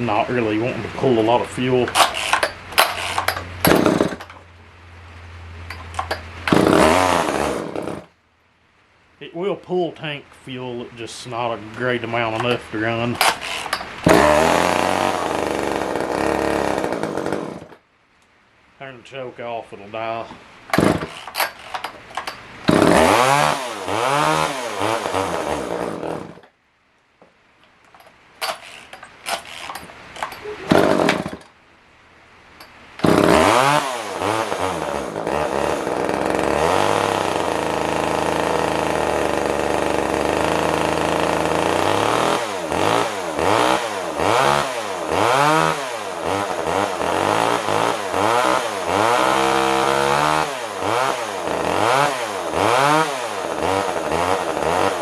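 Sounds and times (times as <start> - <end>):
chainsaw engine revving: 0.0 - 4.4, 5.7 - 8.1, 12.0 - 17.8, 20.7 - 26.5, 28.4 - 31.5, 33.0 - 55.0.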